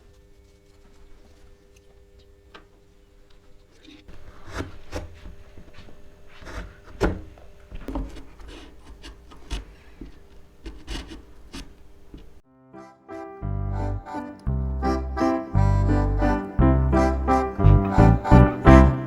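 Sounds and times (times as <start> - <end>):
wood rubbing on wood: 7.8 - 12.4, 16.9 - 19.0.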